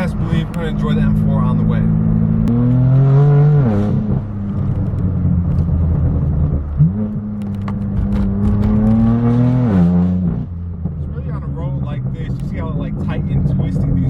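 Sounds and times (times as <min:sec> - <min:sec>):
car engine accelerating through gears: 0:00.0 - 0:14.0.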